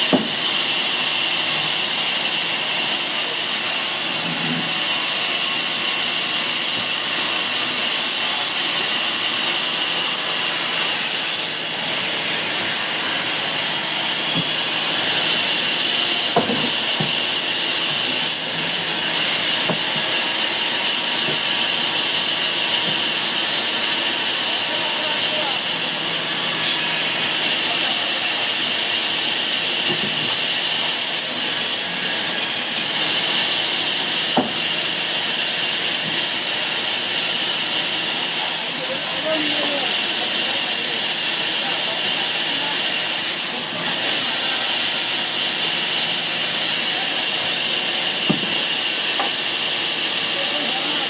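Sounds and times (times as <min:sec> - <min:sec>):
sawmill machinery hissing: 0:00.0 - 0:51.0
knocks: 0:00.1 - 0:00.4, 0:48.3 - 0:48.5.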